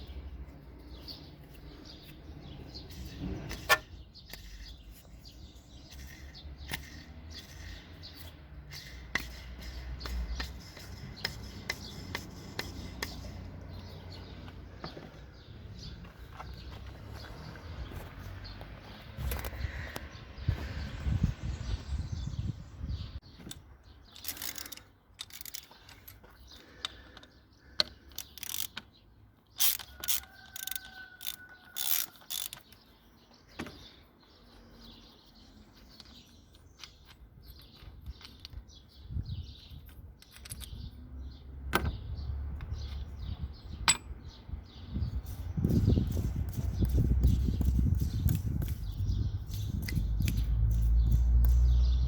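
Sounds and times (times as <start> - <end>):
metallic clicks and clinks: 23.5 - 28.9, 29.6 - 32.8, 35.7 - 39.0, 39.6 - 41.0, 45.2 - 52.0.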